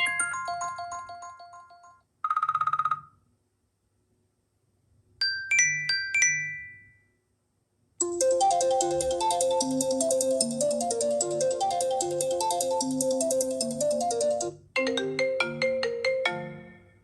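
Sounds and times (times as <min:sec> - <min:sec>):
bell-like ringtone melody: 0:00.0 - 0:02.0, 0:05.2 - 0:07.1, 0:08.0 - 0:17.0.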